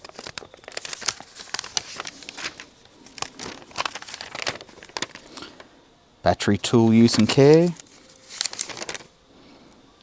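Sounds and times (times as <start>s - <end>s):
paper rustling and crinkling: 0.0s - 5.7s, 6.7s - 9.2s.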